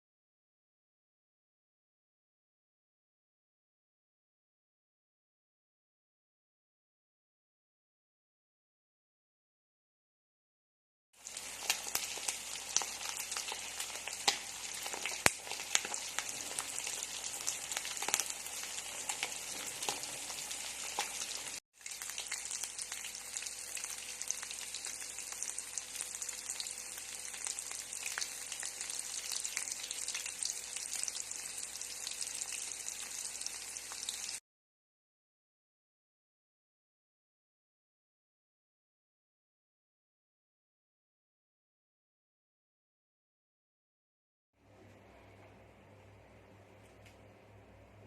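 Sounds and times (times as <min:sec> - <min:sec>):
food sizzling in hot oil: 0:11.2 - 0:34.4
oil popping and crackling: 0:11.2 - 0:34.4.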